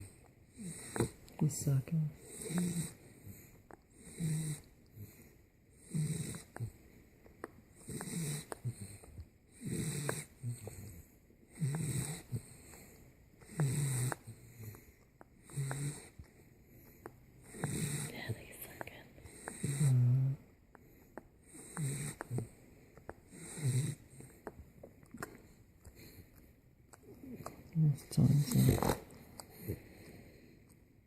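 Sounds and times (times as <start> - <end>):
puppy snoring: 0.0 - 31.0
puppy suckling clicks: 20.7 - 30.9.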